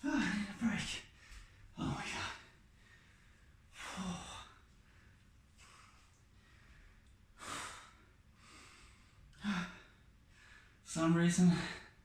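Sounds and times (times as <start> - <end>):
man breathing hard: 1.2 - 10.8.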